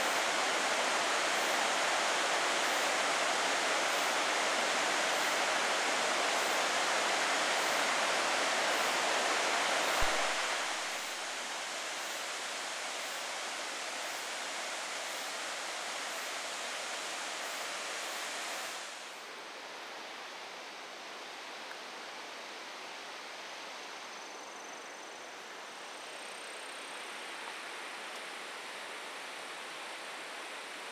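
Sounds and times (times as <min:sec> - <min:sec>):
waterfall rushing: 0:08.7 - 0:11.0.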